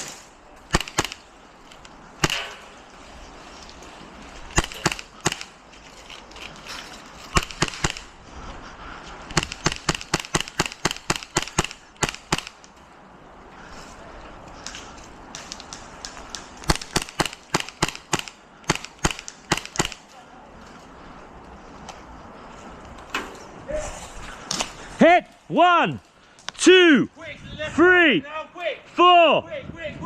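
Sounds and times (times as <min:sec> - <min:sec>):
airsoft guns firing: 0:00.0 - 0:01.3, 0:02.2 - 0:02.6, 0:04.5 - 0:05.6, 0:07.3 - 0:08.1, 0:09.3 - 0:12.7, 0:16.6 - 0:20.0.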